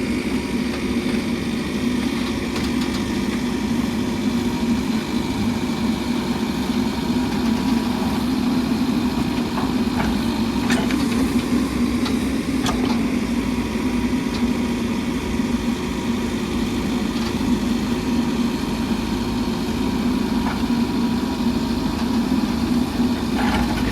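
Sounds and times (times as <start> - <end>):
diesel engine running: 0.0 - 23.9.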